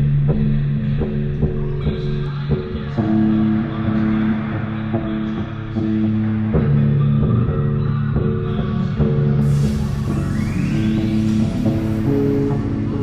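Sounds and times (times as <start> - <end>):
sustained low guitar notes: 2.9 - 13.0.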